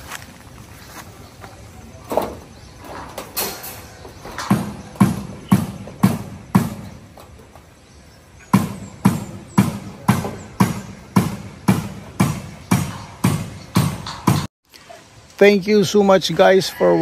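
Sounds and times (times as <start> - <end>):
hammering blows: 2.0 - 14.5.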